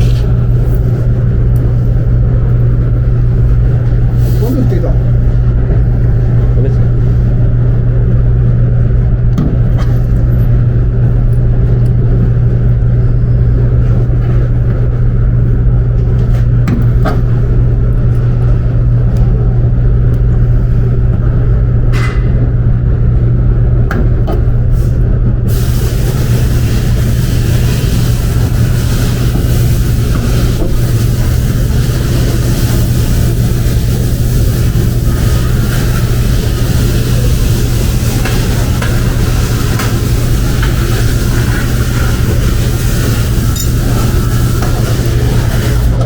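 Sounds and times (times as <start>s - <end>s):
low mechanical hum: 0.0s - 46.0s
loud hiss: 25.5s - 46.0s.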